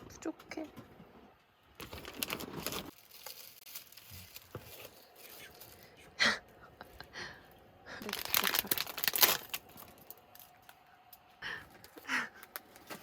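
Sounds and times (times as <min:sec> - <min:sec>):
rustling crinkling handling: 0:01.8 - 0:06.0, 0:08.0 - 0:13.0.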